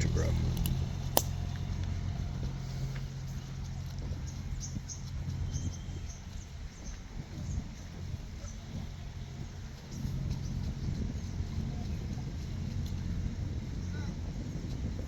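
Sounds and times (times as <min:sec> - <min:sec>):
low motor hum: 0:00.0 - 0:15.0
small birds chirping: 0:03.3 - 0:12.2.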